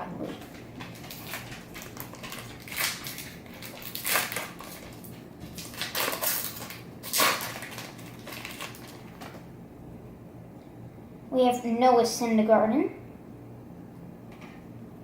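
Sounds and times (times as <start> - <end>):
card pack wrapper crinkling: 0.3 - 9.4.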